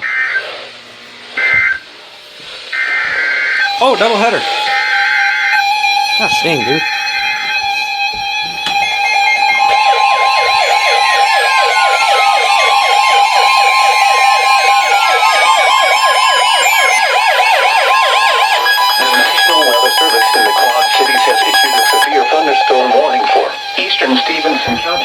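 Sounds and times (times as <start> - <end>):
steady attention tone: 3.6 - 25.0
steady beeps: 8.8 - 25.0
warbling alert tone: 9.1 - 23.7.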